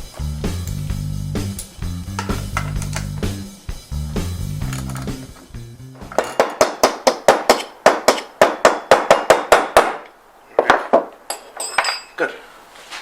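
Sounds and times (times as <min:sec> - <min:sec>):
hammer striking metal: 0:06.0 - 0:12.1.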